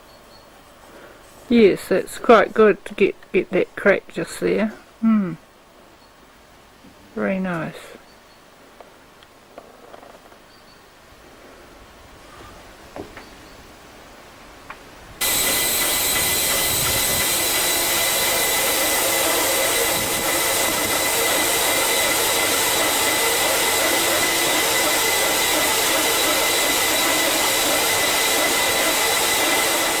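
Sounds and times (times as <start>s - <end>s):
loud steady hiss: 11.0s - 30.0s
high whistling tones: 15.2s - 30.0s.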